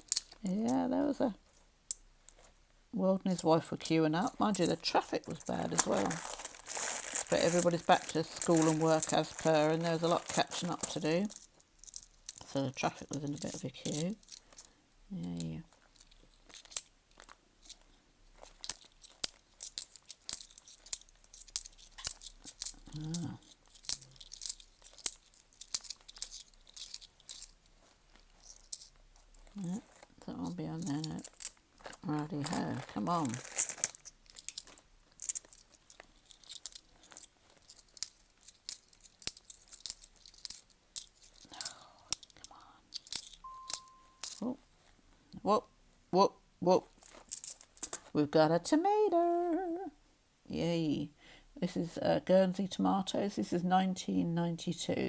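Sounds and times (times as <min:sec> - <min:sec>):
coins clinking: 0:00.0 - 0:00.8, 0:03.3 - 0:14.7, 0:16.0 - 0:17.8, 0:18.4 - 0:27.7, 0:28.3 - 0:44.5, 0:47.0 - 0:48.1.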